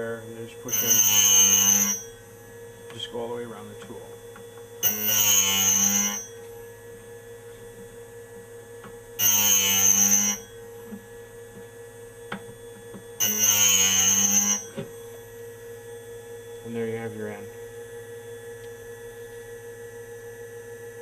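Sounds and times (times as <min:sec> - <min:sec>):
grinder motor hum: 0:00.0 - 0:21.0
loud grinding bursts: 0:04.9 - 0:06.2, 0:13.2 - 0:14.6.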